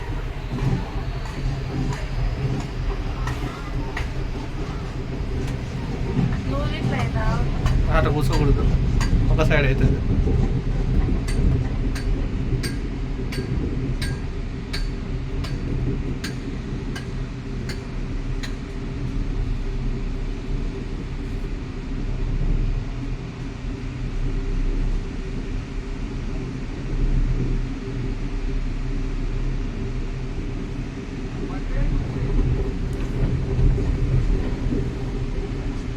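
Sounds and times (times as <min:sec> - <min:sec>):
car road and engine rumble: 0:00.0 - 0:35.9.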